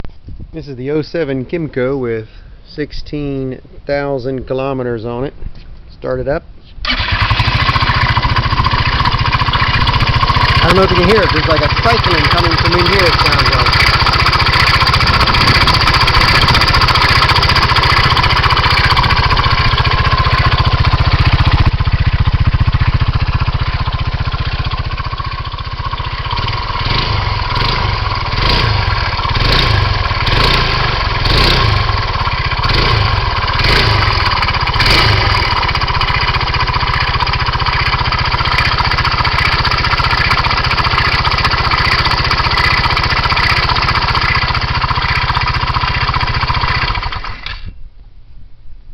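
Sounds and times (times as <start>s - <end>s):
scooter engine idling: 6.9s - 47.5s
surging engine noise: 7.0s - 23.2s, 26.3s - 37.6s.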